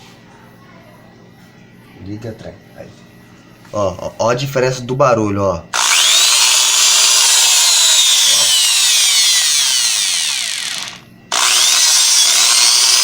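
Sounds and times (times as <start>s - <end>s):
electric drill motor whine: 5.7s - 13.0s.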